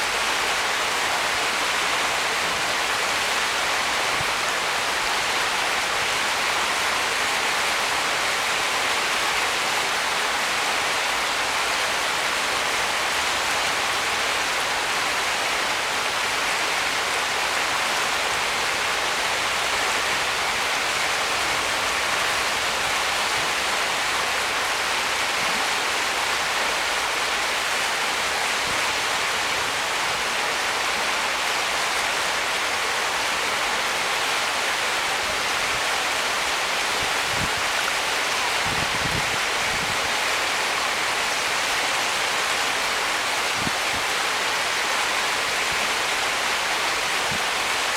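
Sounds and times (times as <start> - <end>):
stream rushing over rocks: 0.0 - 47.9.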